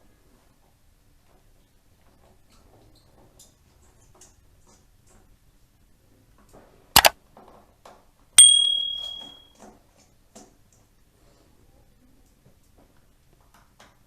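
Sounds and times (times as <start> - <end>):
metallic clink ringing: 8.4 - 9.5.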